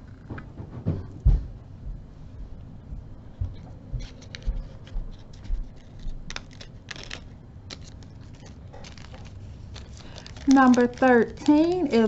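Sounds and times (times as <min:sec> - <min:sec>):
jewelry findings clicking in plastic bag: 0:05.8 - 0:12.0.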